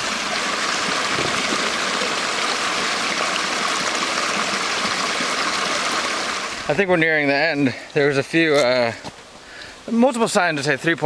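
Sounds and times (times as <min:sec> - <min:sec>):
waterfall splashing: 0:00.0 - 0:08.7.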